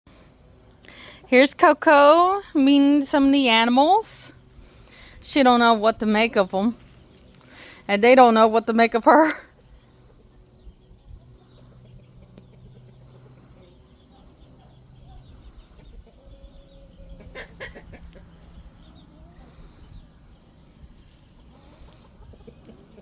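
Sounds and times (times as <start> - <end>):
steady low hum: 0.1 - 23.0
chickens clucking: 9.6 - 23.0.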